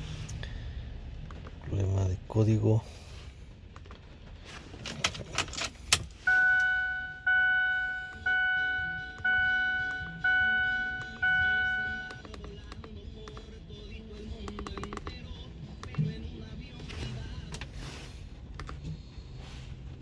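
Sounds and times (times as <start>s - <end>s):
dashboard warning chime: 6.2s - 12.2s.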